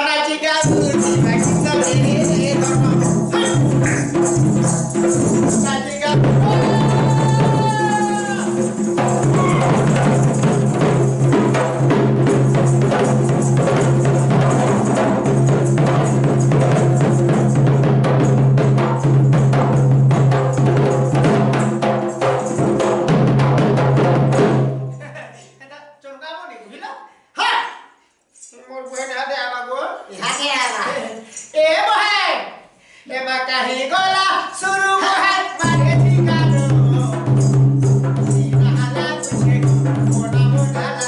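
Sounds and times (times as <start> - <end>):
fast dense drumming: 0.6 - 24.8.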